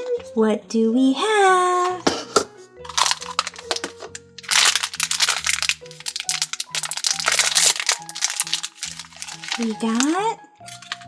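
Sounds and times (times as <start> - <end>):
light background music: 0.0 - 11.0
wrapper crinkling and tearing: 2.9 - 11.0.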